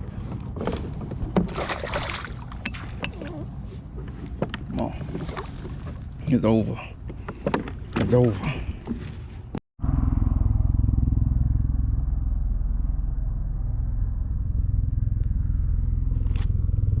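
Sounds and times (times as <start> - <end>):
motor running with low rumble: 9.8 - 17.0.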